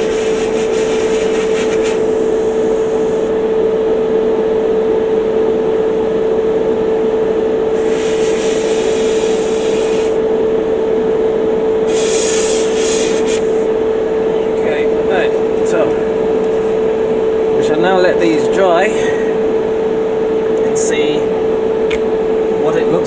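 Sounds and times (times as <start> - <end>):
airbrush spraying hiss: 0.0 - 3.3, 7.7 - 10.2, 11.9 - 13.7
compressor humming: 0.0 - 23.0.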